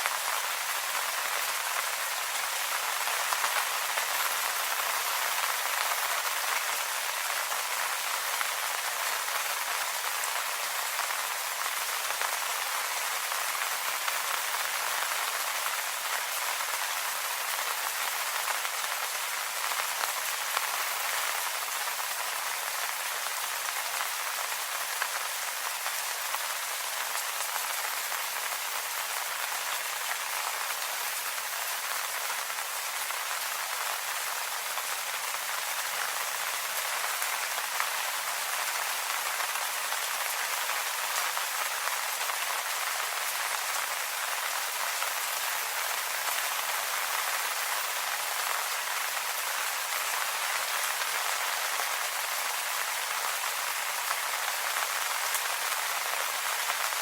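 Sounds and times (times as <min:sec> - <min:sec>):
rain falling on foliage: 0:00.0 - 0:57.0.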